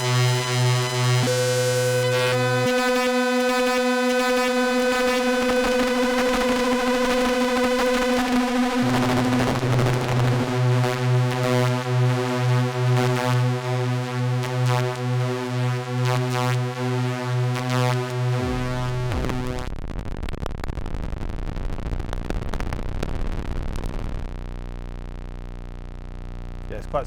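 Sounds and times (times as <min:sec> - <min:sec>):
synthesizer bass note pulsing: 0:00.0 - 0:26.7.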